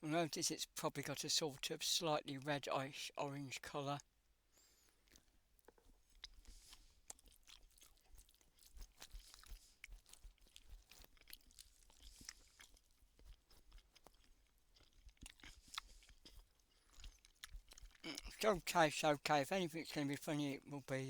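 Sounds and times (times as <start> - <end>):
person chewing food: 4.6 - 18.6.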